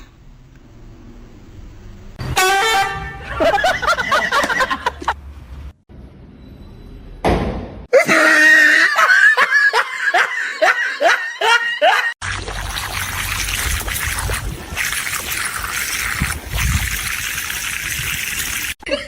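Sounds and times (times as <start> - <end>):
loud laughter: 3.2 - 5.2, 7.9 - 12.2.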